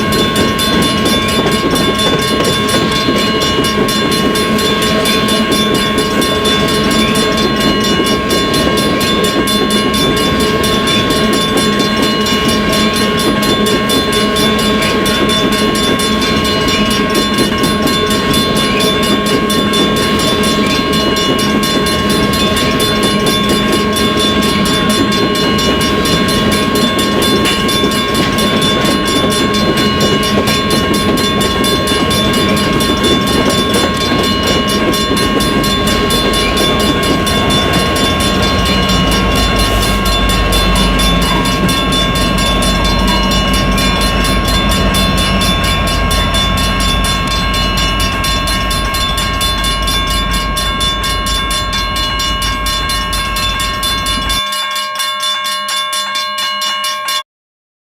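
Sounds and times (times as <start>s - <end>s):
low train rumble: 0.0s - 54.6s
train wheels clattering on rails: 0.0s - 55.6s
steady high tones: 0.0s - 55.8s.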